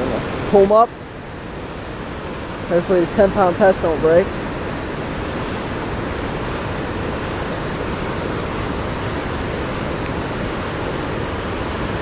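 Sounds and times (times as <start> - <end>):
river water rushing: 0.0 - 12.0.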